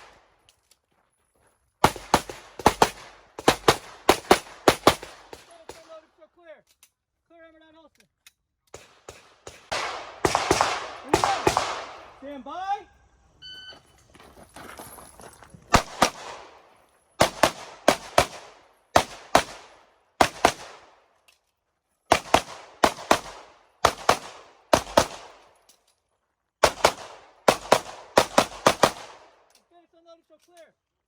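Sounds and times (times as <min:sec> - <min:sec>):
pistol shots in quick pairs: 0:01.8 - 0:06.0, 0:08.7 - 0:12.2, 0:15.7 - 0:21.0, 0:22.1 - 0:25.5, 0:26.6 - 0:29.4.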